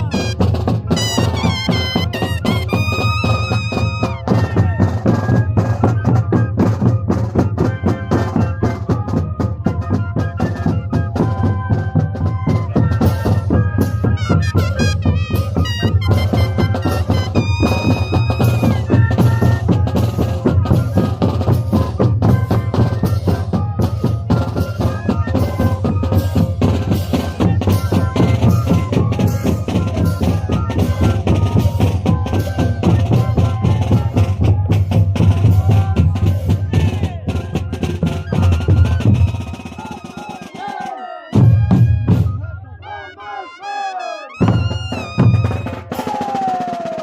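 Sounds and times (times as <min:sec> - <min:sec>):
duct flutes holding notes: 0:00.0 - 0:47.0
steady dense drumbeat: 0:11.6 - 0:40.0.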